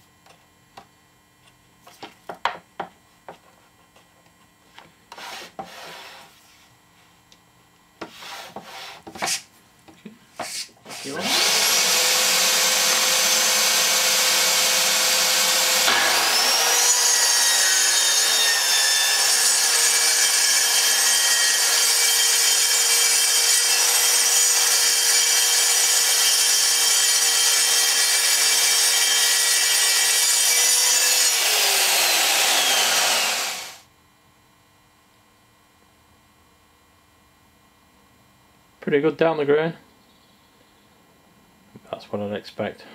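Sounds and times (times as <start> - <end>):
track saw cutting plywood: 10.9 - 33.8.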